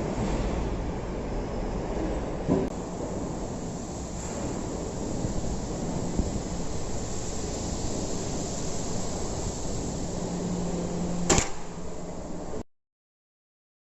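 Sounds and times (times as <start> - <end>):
sharp cutting bang: 11.3 - 11.8.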